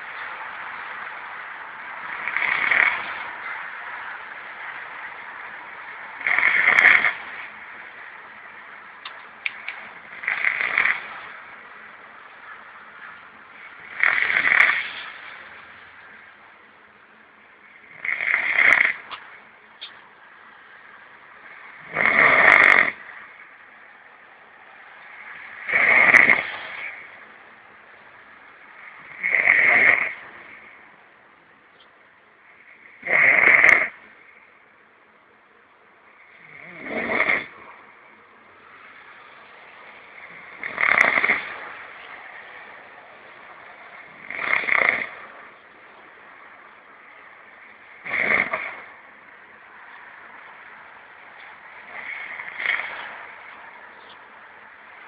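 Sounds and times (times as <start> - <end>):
faint steady hiss: 0.0 - 55.0
person snoring: 21.8 - 23.0, 36.3 - 37.8, 47.9 - 48.9.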